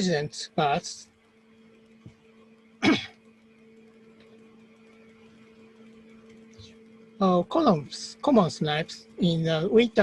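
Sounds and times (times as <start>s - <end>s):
faint steady hum: 0.0s - 10.0s
man clearing throat: 2.8s - 3.2s.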